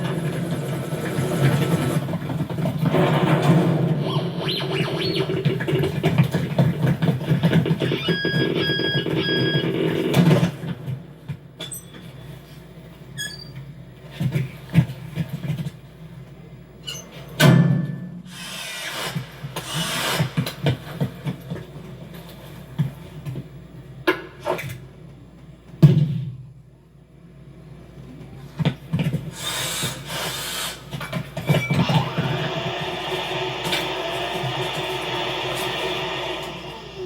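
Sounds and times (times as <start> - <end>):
heavy hit: 31.8 - 37.0.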